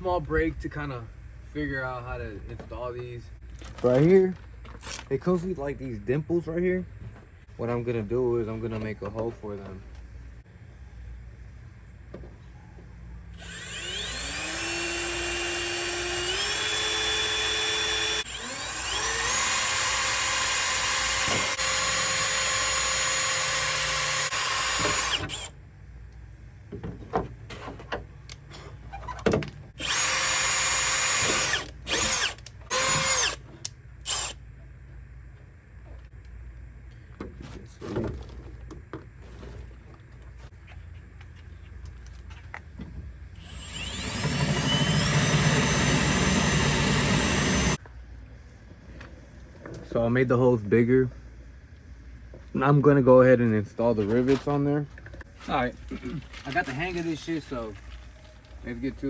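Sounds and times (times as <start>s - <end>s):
power drill whining: 13.4s - 25.5s, 29.8s - 33.4s, 34.0s - 34.4s, 43.4s - 47.8s.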